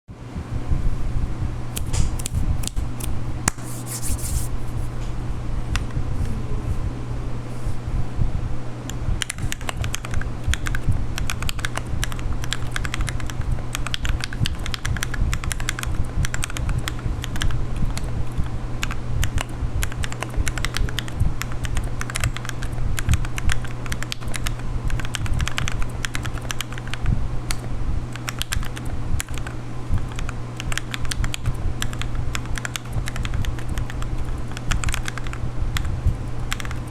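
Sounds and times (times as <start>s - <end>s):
steady low hum: 0.1s - 36.9s
mechanical keyboard key clacks: 9.2s - 26.9s.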